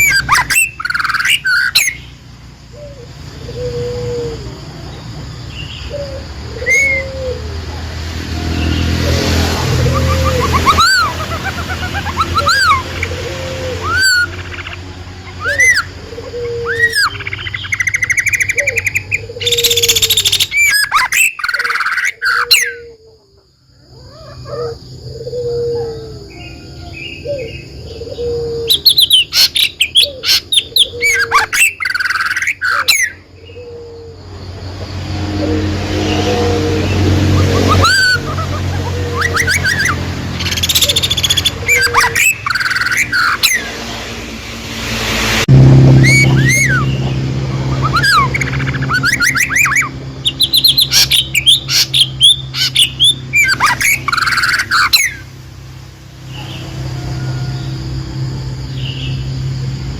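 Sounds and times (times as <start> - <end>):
low repeating bird call: 0.0 - 7.8, 8.6 - 23.2, 35.2 - 43.8
birds chirping and whistling: 0.0 - 55.4, 56.2 - 59.9.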